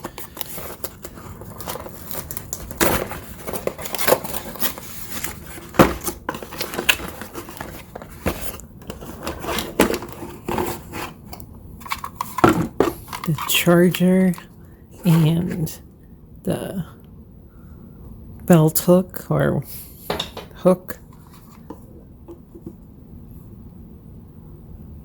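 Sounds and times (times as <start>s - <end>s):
packaging rustling and crinkling: 0.0s - 15.7s.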